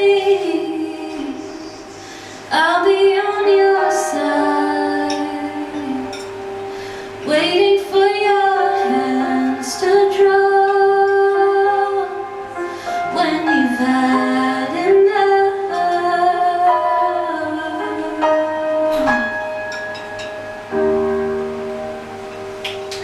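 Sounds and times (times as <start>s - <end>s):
woman singing with vibrato: 0.0s - 19.3s
live band accompaniment: 15.7s - 23.0s.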